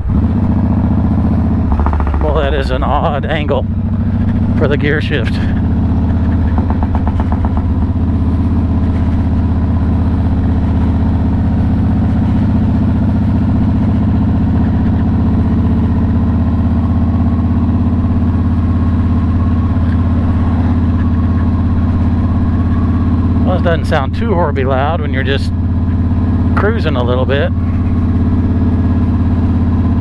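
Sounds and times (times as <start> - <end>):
motorcycle engine cruising: 0.0 - 30.0.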